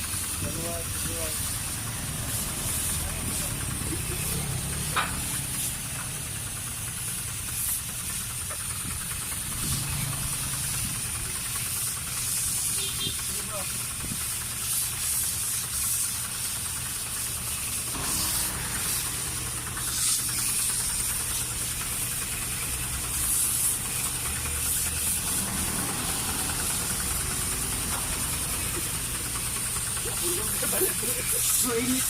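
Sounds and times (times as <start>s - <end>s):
water spraying hiss: 0.0s - 32.0s
low machine hum: 18.0s - 31.1s.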